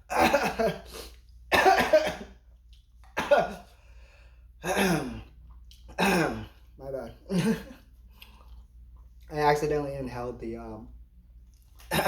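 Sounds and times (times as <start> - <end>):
man coughing: 0.1 - 0.9, 1.5 - 2.4, 3.2 - 3.7, 4.6 - 5.2, 5.9 - 6.6, 7.3 - 7.8.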